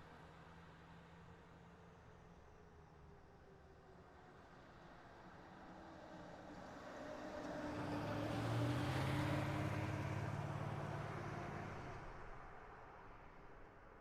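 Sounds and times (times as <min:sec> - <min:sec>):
car passing by: 0:06.7 - 0:12.7.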